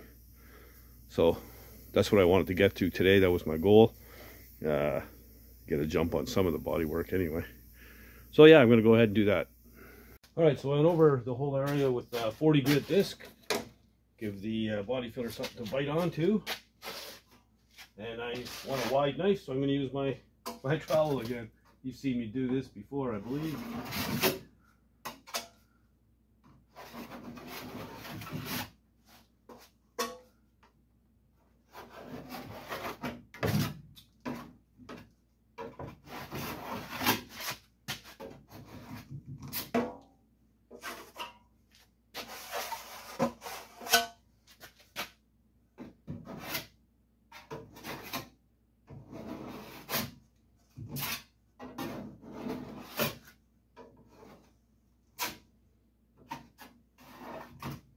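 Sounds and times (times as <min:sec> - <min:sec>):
trowel scraping body filler: 0:16.4 - 0:19.1, 0:26.7 - 0:29.6, 0:31.6 - 0:33.2, 0:36.0 - 0:39.7, 0:42.1 - 0:44.0, 0:46.2 - 0:48.3, 0:49.1 - 0:50.2, 0:50.9 - 0:53.4, 0:56.3 - 0:57.7.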